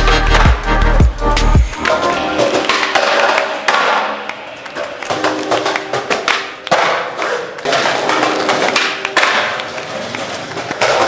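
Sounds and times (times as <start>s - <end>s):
background music: 0.0s - 6.6s.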